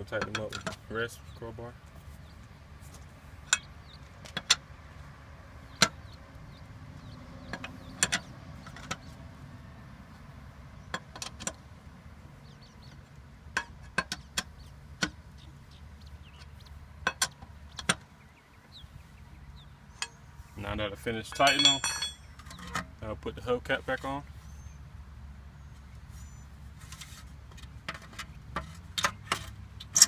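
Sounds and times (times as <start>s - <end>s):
lug wrench clinking on nuts: 21.2s - 22.9s.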